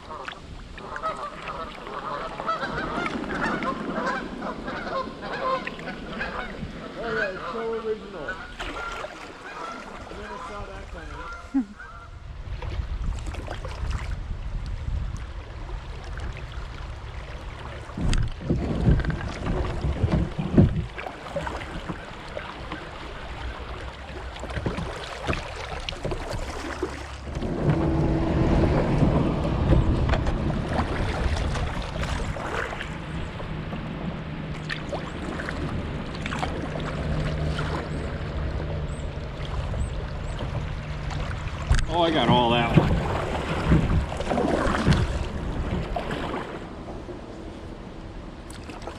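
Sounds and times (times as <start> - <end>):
rushing water: 0.0 - 48.9
kayak hull scraping over rocks: 17.6 - 47.9
paddle knocking on rock: 17.9 - 22.0, 41.6 - 46.5.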